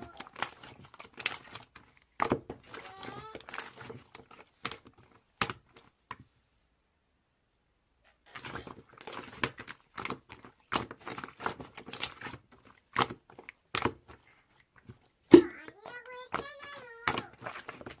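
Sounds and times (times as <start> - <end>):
slime squeezed crackling: 0.0 - 5.8, 8.2 - 18.0.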